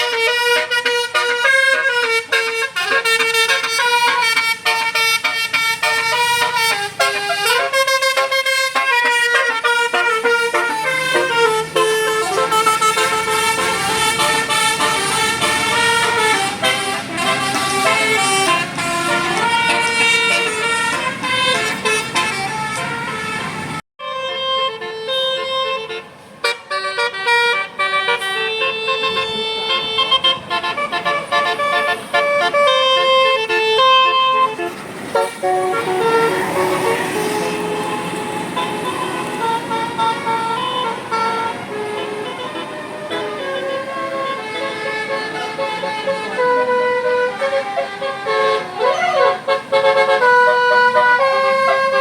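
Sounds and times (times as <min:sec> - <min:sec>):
musical bus air horn: 0:00.0 - 0:52.0.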